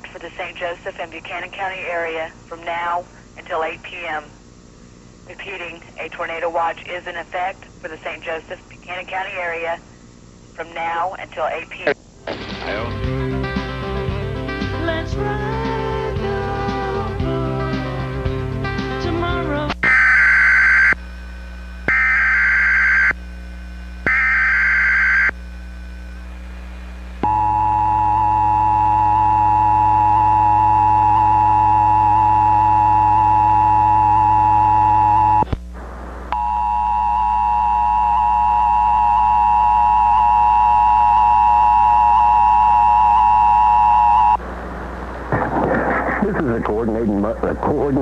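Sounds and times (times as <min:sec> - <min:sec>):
buzzing data bursts: 0:19.8 - 0:25.4.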